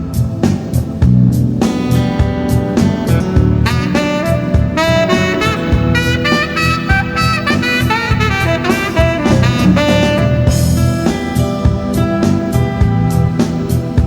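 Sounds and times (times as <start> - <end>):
backing track with drums and bass: 0.0 - 14.0
tenor saxophone melody: 3.6 - 11.0.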